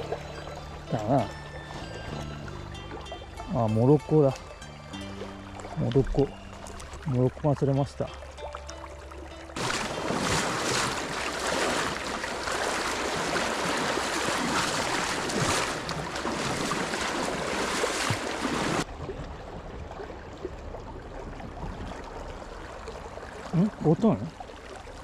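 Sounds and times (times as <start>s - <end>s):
river water rushing: 0.0s - 18.9s
stream flowing: 0.0s - 25.0s.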